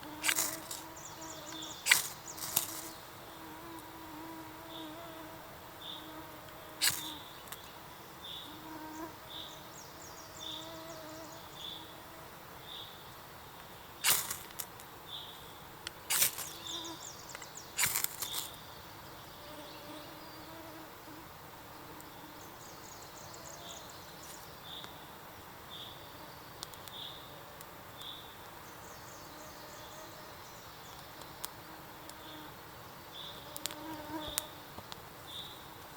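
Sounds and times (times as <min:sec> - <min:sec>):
insect buzzing: 0:00.0 - 0:12.8, 0:14.0 - 0:15.2, 0:16.1 - 0:24.8, 0:31.4 - 0:34.7
sharp clicks or snaps: 0:01.9 - 0:02.8, 0:06.8 - 0:07.6, 0:14.0 - 0:14.8, 0:15.8 - 0:16.5, 0:17.3 - 0:18.5.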